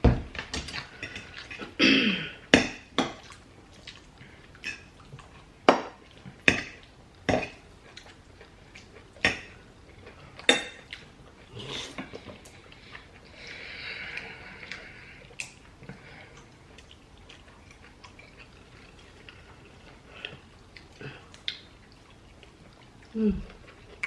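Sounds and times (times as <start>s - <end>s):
soft eating sounds: 0.4s - 24.0s.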